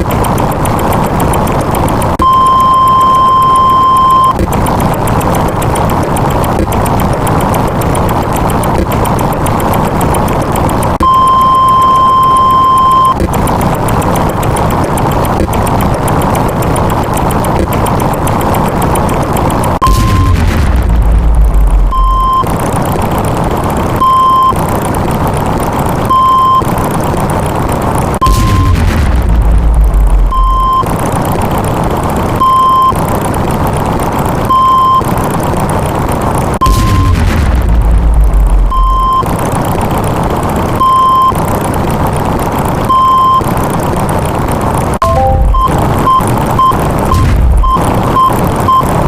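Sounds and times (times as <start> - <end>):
engine rumble: 0.0 - 49.0
loud steady noise: 0.0 - 49.0
reversing alarm beeping: 2.2 - 4.4, 11.0 - 13.2, 19.8 - 20.5, 21.8 - 22.5, 30.1 - 30.9, 38.6 - 39.3, 45.0 - 49.0.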